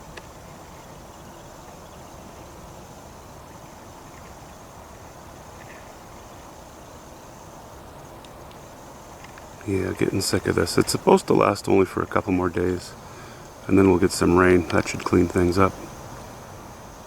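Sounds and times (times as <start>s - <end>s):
steady background noise: 0.0s - 17.0s
faint ticks: 8.2s - 11.1s, 14.4s - 16.3s.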